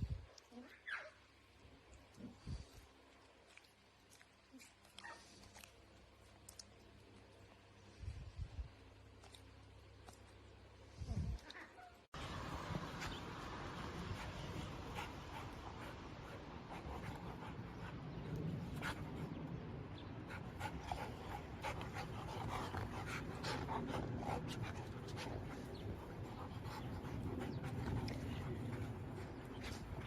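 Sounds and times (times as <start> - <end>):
dog panting: 12.2 - 19.6, 20.2 - 30.0.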